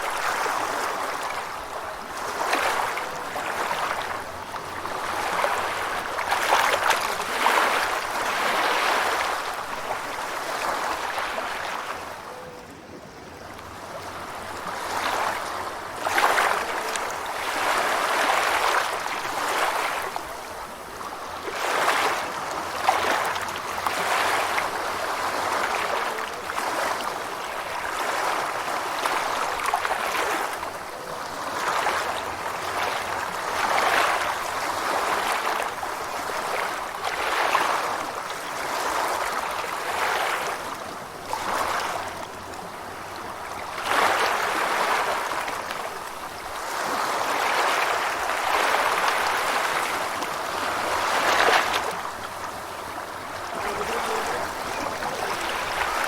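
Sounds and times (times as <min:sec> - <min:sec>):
ocean waves washing in: 0:13.8 - 0:56.0.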